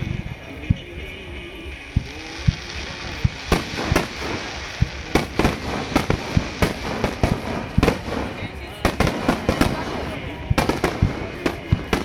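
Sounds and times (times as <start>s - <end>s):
firework crackling: 0.0s - 12.0s
firework booms: 1.8s - 12.0s.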